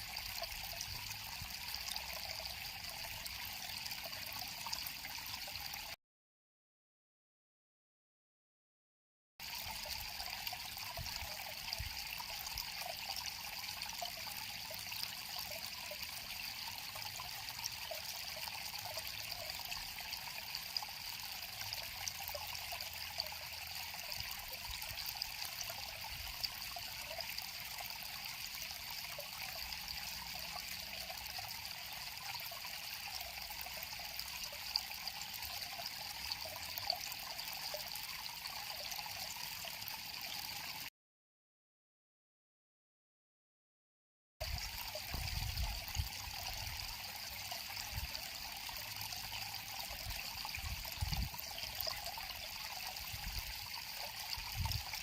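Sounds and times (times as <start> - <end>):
river water trickling: 0.0 - 6.0, 9.4 - 40.9, 44.4 - 55.0.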